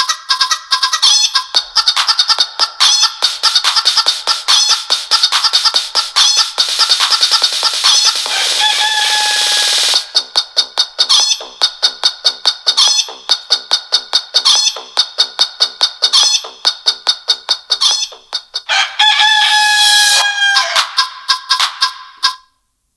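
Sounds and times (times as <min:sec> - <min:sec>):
chicken clucking: 0:08.2 - 0:09.3, 0:17.7 - 0:21.2
rooster crowing: 0:08.2 - 0:10.1, 0:18.7 - 0:21.1.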